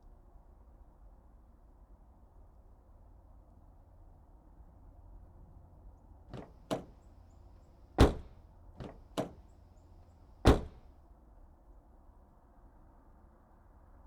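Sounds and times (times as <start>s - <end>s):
sharp impacts: 8.0s - 9.4s, 10.5s - 10.8s.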